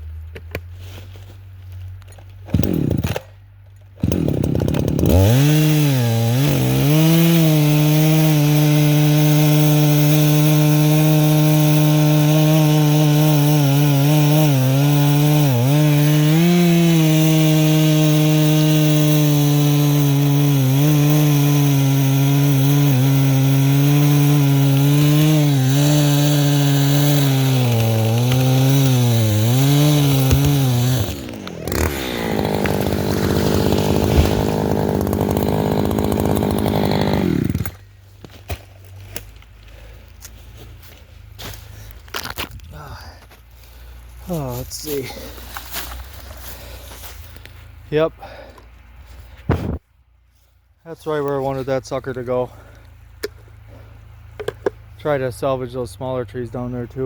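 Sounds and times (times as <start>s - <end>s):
chainsaw pull-start sputter: 2.4s - 37.9s
chainsaw cutting into tree: 2.4s - 48.6s.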